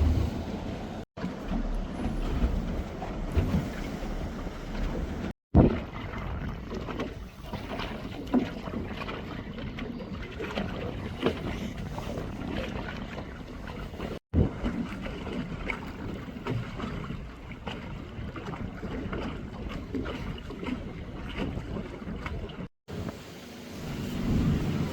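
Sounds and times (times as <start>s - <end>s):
wind buffeting microphone: 0.0s - 1.0s
rumble of boat and water: 0.0s - 24.9s.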